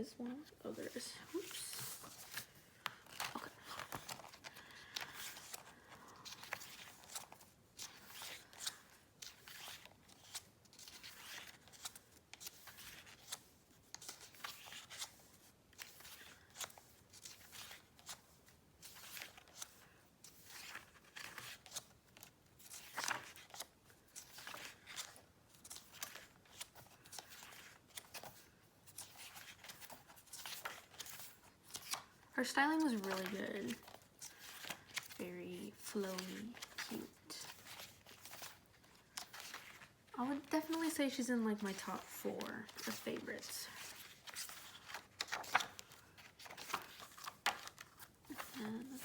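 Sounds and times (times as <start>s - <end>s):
paper pages flicking: 42.7s - 48.8s.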